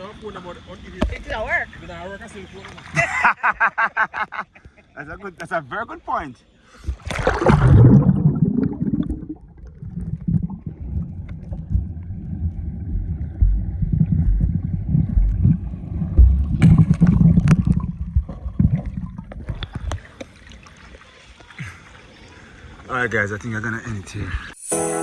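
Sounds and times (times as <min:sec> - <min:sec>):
river water lapping: 0:06.6 - 0:23.2
wind rumbling on microphone: 0:06.8 - 0:20.0.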